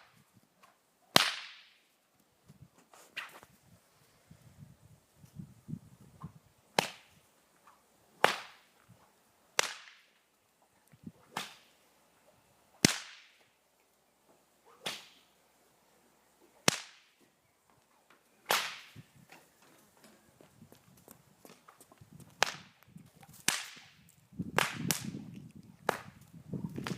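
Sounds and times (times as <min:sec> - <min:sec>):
whip cracking: 0:01.1 - 0:01.8, 0:06.8 - 0:07.1, 0:08.2 - 0:08.7, 0:09.6 - 0:10.1, 0:11.3 - 0:11.7, 0:12.8 - 0:13.4, 0:14.7 - 0:15.2, 0:16.6 - 0:17.1, 0:18.5 - 0:19.0, 0:22.4 - 0:22.8, 0:23.4 - 0:24.0, 0:24.6 - 0:25.2, 0:25.8 - 0:26.2.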